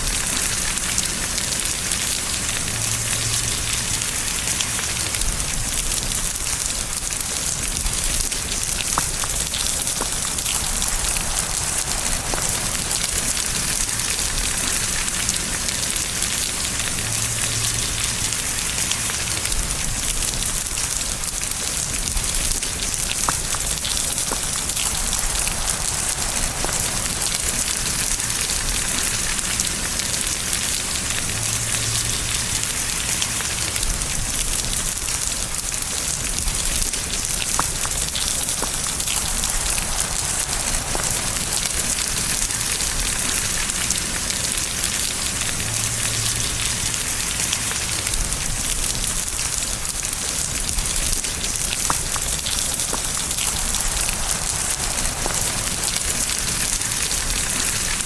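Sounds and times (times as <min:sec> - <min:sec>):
steady rain falling: 0:00.0 - 0:58.0
single raindrops ticking: 0:49.3 - 0:58.0.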